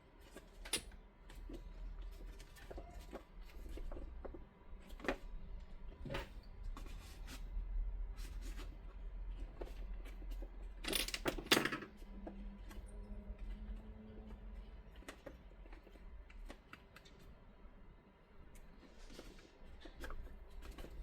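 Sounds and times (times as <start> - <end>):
fabric clicks and crinkles: 18.5 - 21.0.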